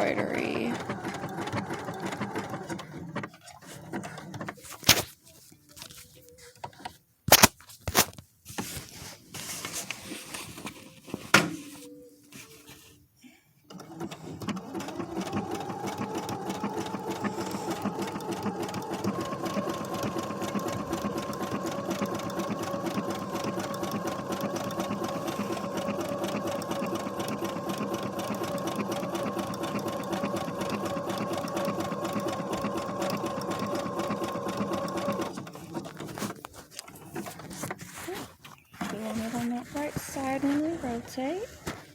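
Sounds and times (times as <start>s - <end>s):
sewing machine running: 0.0s - 4.6s, 13.7s - 37.4s.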